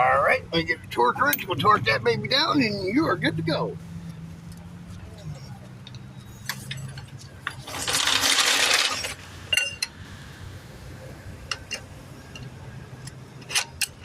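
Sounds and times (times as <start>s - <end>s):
metal tools clinking: 5.9s - 10.0s, 13.4s - 14.0s
tool rattle: 6.5s - 10.0s.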